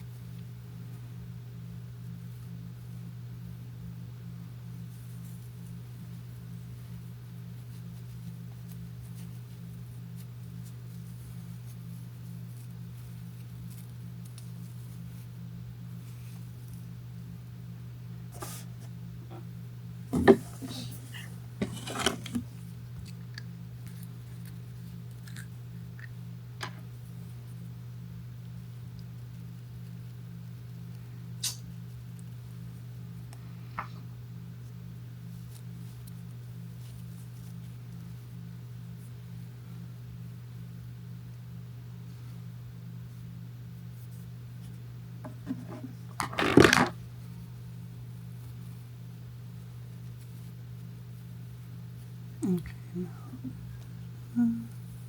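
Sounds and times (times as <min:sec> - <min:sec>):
low electrical hum: 0:00.0 - 0:55.0
faint ticks and rustles: 0:04.7 - 0:15.3, 0:34.6 - 0:39.8.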